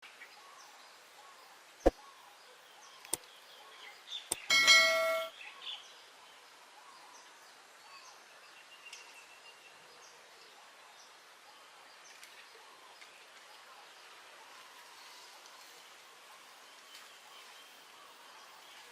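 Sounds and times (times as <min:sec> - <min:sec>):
sharp clicks: 0:04.3 - 0:04.5
short metallic ring: 0:04.5 - 0:05.3.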